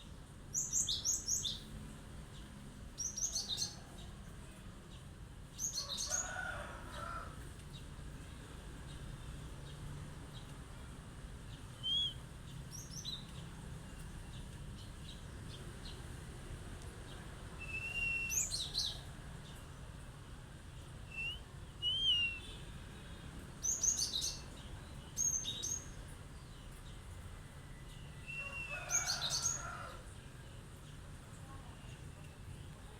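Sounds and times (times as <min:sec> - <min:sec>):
bird chirping and whistling: 0:11.8 - 0:12.2, 0:17.6 - 0:18.6, 0:21.1 - 0:22.5.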